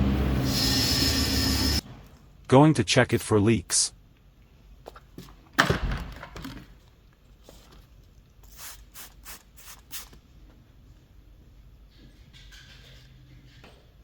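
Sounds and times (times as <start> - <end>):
spray bottle spritzing: 8.4 - 10.2.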